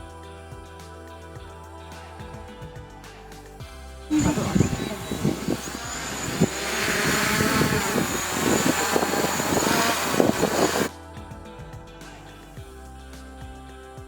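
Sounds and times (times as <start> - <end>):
quiet background music: 0.0 - 14.0
drone motor whine: 4.1 - 10.9
propeller rushing noise: 4.1 - 10.9
wind buffeting microphone: 4.1 - 10.9.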